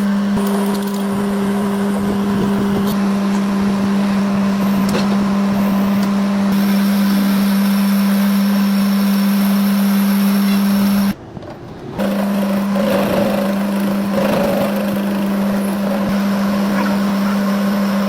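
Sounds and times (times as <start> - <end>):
machine humming: 0.0 - 18.0
noisy background: 10.0 - 18.0.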